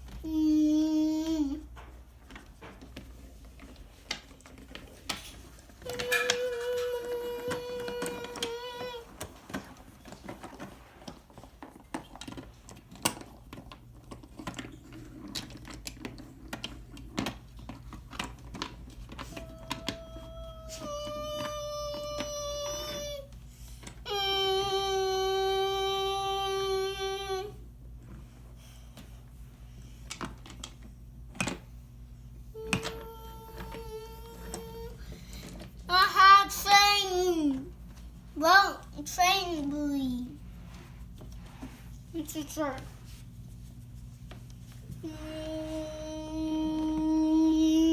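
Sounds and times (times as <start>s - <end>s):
steady pitched hum: 5.0s - 11.0s, 18.1s - 47.9s.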